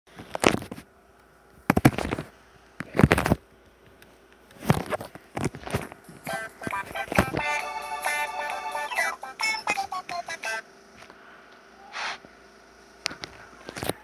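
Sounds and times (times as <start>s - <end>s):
music: 6.2s - 10.6s.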